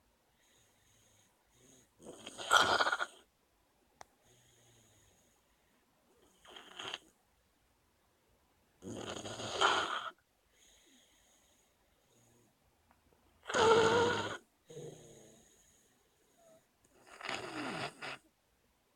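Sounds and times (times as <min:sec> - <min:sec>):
faint breath: 0:00.2 - 0:02.0, 0:10.5 - 0:12.6, 0:14.7 - 0:16.7
loud snoring: 0:00.9 - 0:03.2, 0:06.4 - 0:07.0, 0:08.8 - 0:10.2, 0:13.4 - 0:15.8, 0:16.4 - 0:18.3.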